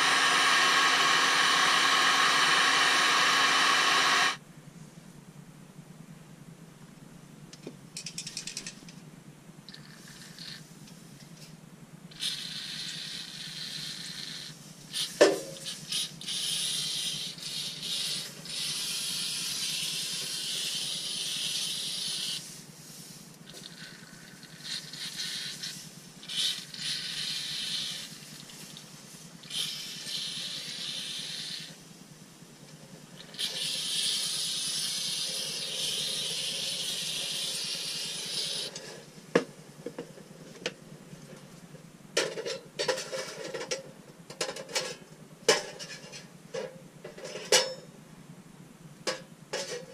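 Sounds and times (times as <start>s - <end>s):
aerosol spray can hissing: 12.2s - 31.8s, 33.3s - 38.8s.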